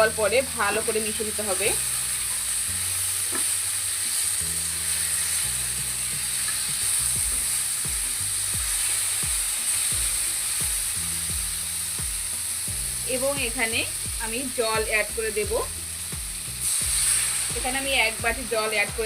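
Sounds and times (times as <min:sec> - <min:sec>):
food sizzling in hot oil: 0:00.0 - 0:19.0
low background music: 0:00.0 - 0:19.0.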